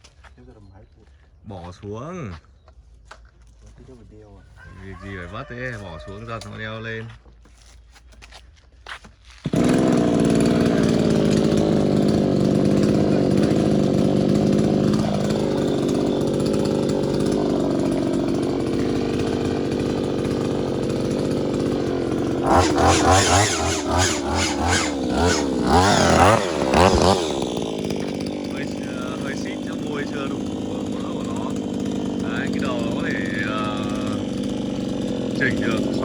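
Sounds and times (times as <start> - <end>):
small petrol engine revving: 9.4 - 36.0
trimmer blades chattering: 9.4 - 36.0.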